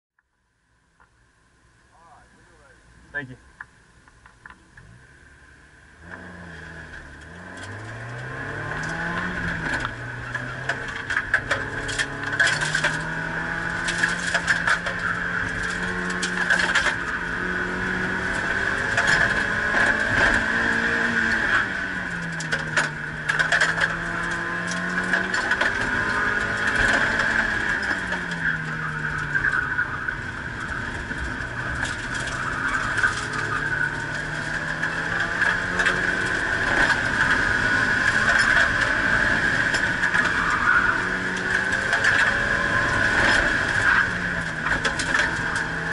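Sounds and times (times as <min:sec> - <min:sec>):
road and tyre noise: 0:00.2 - 0:45.9
car engine revving: 0:04.8 - 0:45.9.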